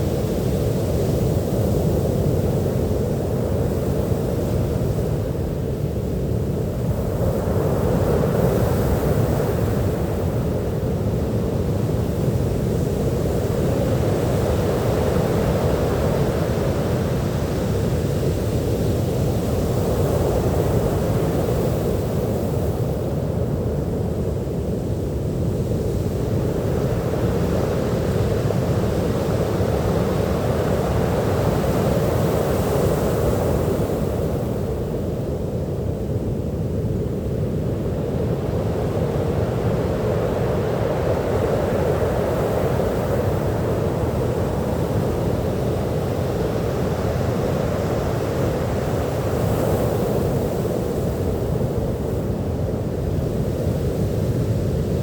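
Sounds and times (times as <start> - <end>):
ocean surf washing onto beach: 26.2 - 55.0.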